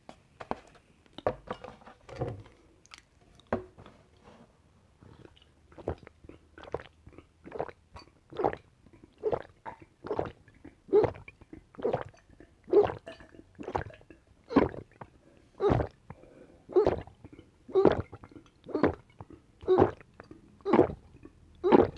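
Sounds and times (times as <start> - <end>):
person gulping a drink: 5.0 - 21.9.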